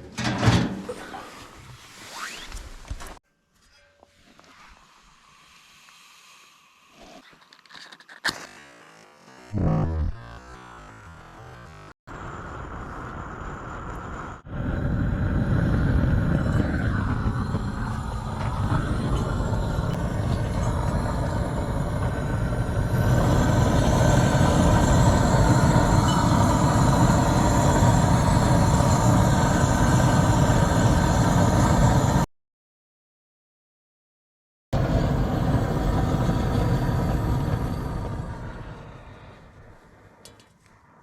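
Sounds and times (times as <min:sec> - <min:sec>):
backhoe diesel engine running: 0:16.0 - 0:31.3.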